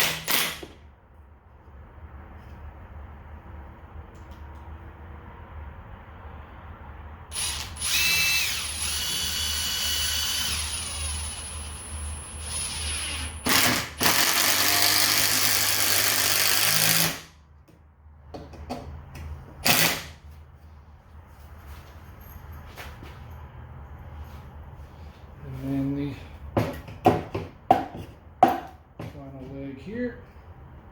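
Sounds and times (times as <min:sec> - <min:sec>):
hammer drill driving screws into wood: 0:00.0 - 0:00.8, 0:07.3 - 0:11.7, 0:12.4 - 0:17.3, 0:19.6 - 0:20.2.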